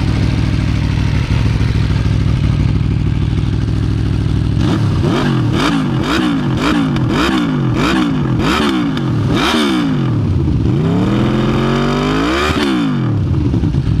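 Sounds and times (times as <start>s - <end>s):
motorcycle engine revving: 0.0s - 14.0s.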